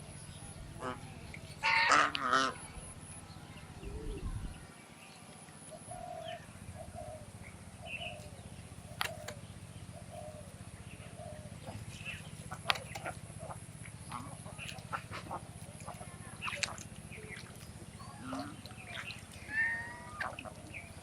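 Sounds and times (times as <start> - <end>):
swans calling softly: 0.7 - 2.8, 11.5 - 21.0.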